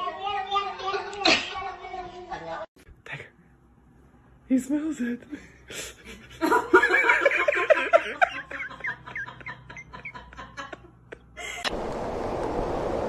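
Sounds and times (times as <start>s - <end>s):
person laughing: 5.8s - 11.7s.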